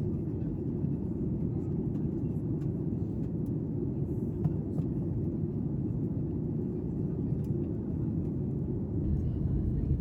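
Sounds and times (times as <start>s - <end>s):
airplane cabin rumble: 8.9s - 10.0s.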